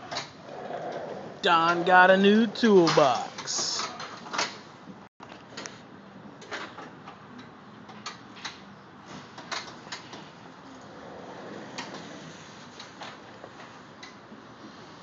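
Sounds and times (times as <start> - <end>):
low background noise: 0.1 - 9.6.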